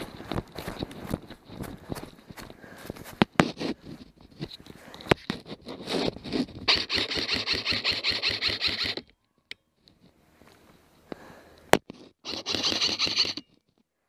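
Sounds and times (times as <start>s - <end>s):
footsteps: 0.0s - 9.0s.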